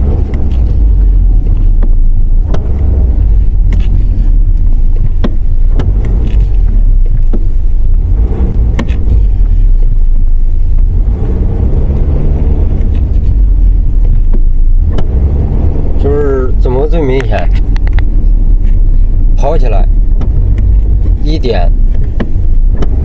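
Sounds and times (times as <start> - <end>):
car engine and road rumble: 0.0 - 23.0
sharp clicks or knocks: 1.7 - 2.9, 5.0 - 6.5, 21.9 - 23.0.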